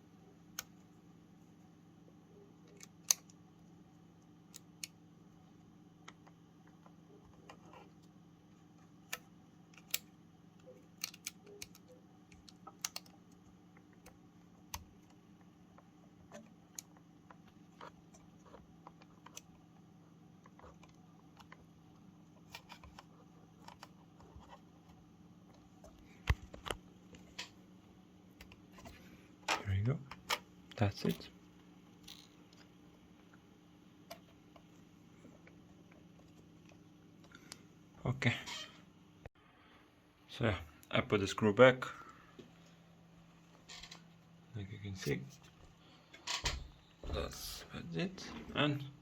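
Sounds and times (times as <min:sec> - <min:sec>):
steady low hum: 0:00.0 - 0:49.0
plastic and metal parts clicking: 0:11.0 - 0:13.2.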